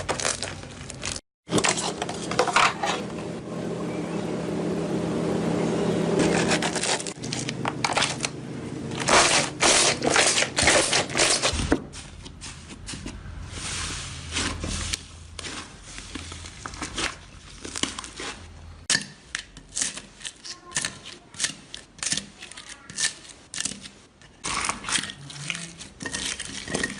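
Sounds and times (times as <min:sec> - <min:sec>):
slime squishing by hand: 0:09.0 - 0:18.6.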